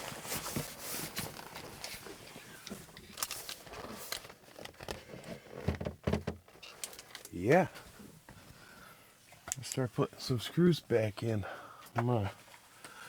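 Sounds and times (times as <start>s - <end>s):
rustling: 0.0s - 5.7s.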